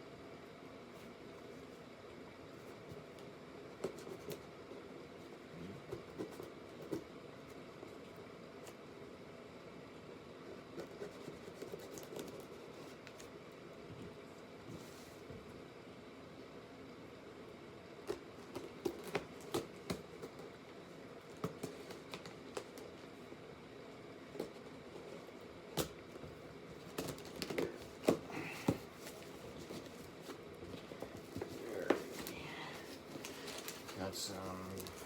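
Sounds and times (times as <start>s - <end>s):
paper rustling: 26.8s - 35.0s.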